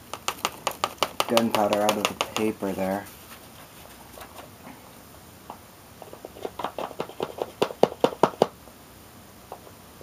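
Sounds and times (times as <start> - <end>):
patter of grains: 0.0 - 4.8
light taps on paper: 0.1 - 2.8.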